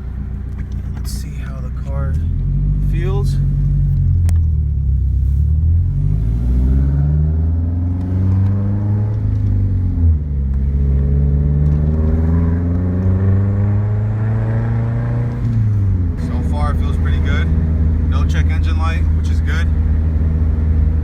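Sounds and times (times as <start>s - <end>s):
turbocharged car engine revving: 0.0s - 21.0s.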